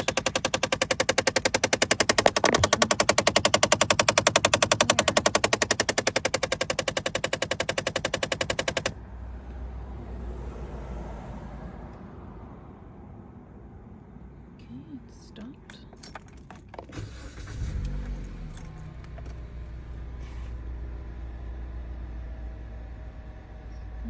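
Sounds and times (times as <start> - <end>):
actuator clicking rapidly: 0.0 - 8.9.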